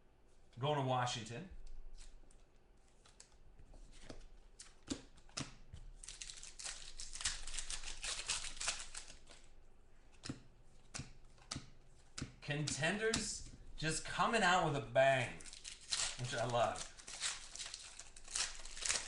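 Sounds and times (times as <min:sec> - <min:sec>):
trading cards crinkling: 0:01.9 - 0:09.5, 0:14.6 - 0:19.0
cards clicking and snapping: 0:04.0 - 0:09.4, 0:10.1 - 0:13.3, 0:15.4 - 0:19.0.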